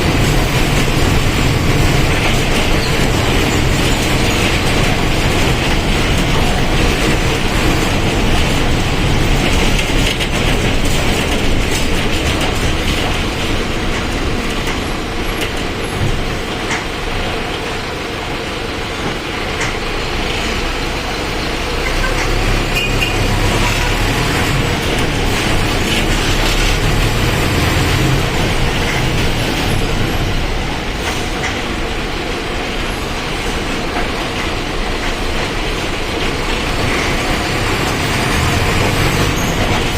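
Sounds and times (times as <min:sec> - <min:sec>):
rattles and clicks: 0:00.0 - 0:17.7, 0:21.8 - 0:32.4, 0:33.4 - 0:39.9
bus diesel engine running: 0:00.0 - 0:39.9.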